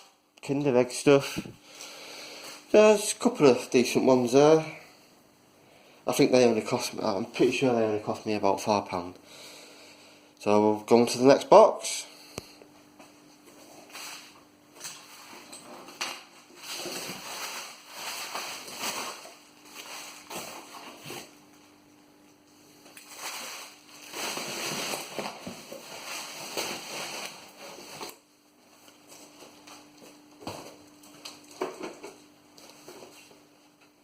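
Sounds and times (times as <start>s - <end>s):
packaging rustling and crumpling: 13.8s - 21.4s, 22.8s - 28.2s.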